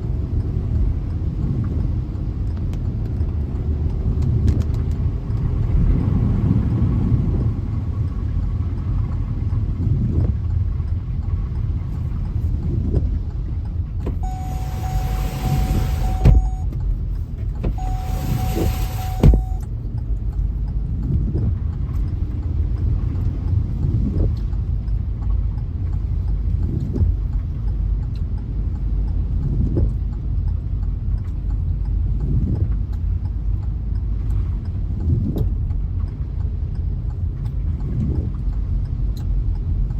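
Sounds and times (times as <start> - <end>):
car driving from inside cabin: 0.0 - 39.9
hissing bursts: 17.8 - 19.6.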